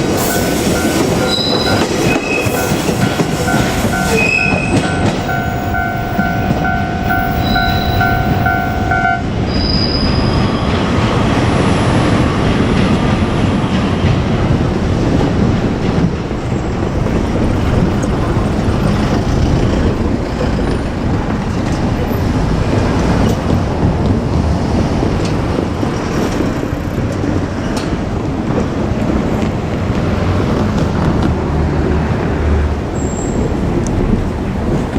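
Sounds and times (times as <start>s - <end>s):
crossing warning bell: 0.0s - 11.0s
train wheels clattering on rails: 0.0s - 34.9s.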